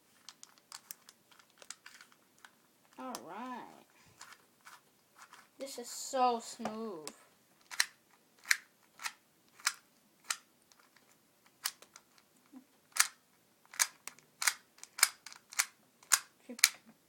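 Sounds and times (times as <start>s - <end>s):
plastic puzzle clicks: 0.2s - 3.2s, 6.6s - 12.3s, 12.9s - 16.8s.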